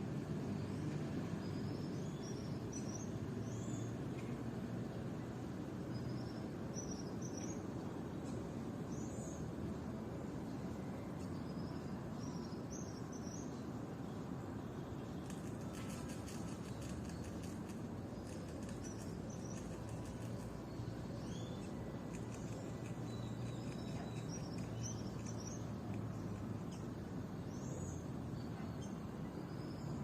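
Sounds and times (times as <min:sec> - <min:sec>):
songbird chirping: 0:11.2 - 0:30.0.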